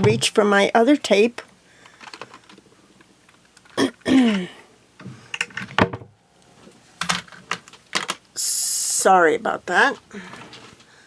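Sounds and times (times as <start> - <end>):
person clearing throat: 3.8 - 4.6.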